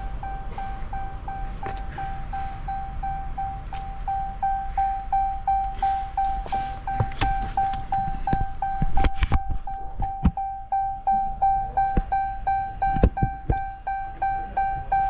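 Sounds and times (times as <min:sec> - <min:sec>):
car warning chime beeping: 0:00.0 - 0:15.0
sharp clicks and knocks: 0:05.6 - 0:10.5, 0:12.8 - 0:14.9.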